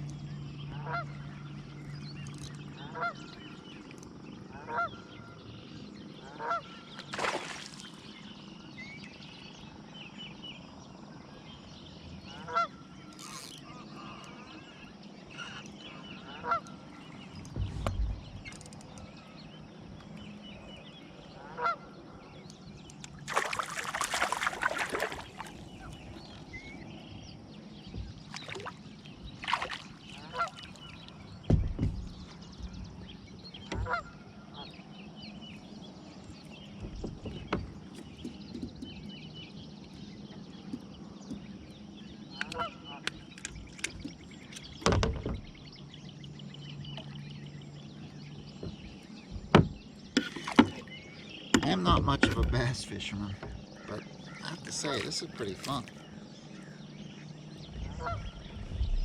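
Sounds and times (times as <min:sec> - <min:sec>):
geese honking: 0:21.4 - 0:21.9, 0:30.1 - 0:30.7, 0:33.8 - 0:34.6, 0:57.8 - 0:58.4.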